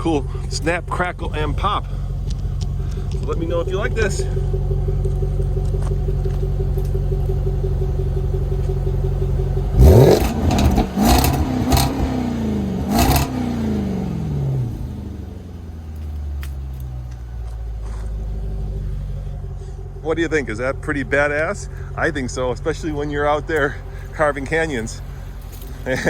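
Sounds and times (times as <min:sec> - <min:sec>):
car engine idling and revving: 0:00.0 - 0:26.0
exhaust pops and crackles: 0:00.0 - 0:26.0.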